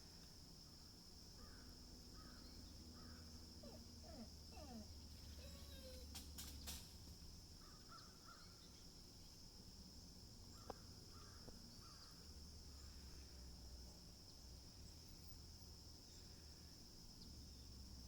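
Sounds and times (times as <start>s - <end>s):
faint bird calls: 2.2s - 6.8s.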